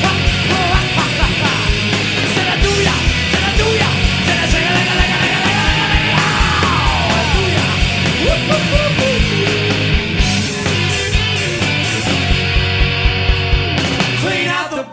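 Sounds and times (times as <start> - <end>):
live rock band playing: 0.0 - 14.8
shouted vocals: 3.4 - 9.8.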